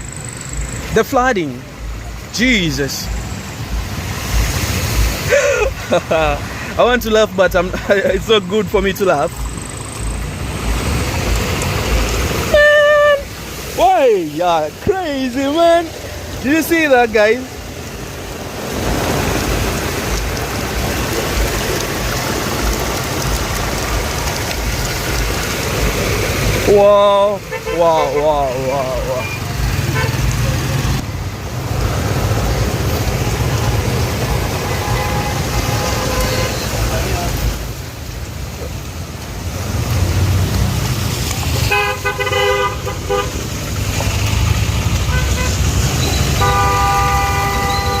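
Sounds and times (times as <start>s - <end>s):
heavy rain pouring: 0.0s - 48.0s
vehicle engine rumbling: 0.0s - 48.0s
vehicle horn honking: 12.5s - 13.4s, 27.5s - 28.4s, 34.5s - 36.8s, 41.7s - 43.4s, 45.1s - 48.0s.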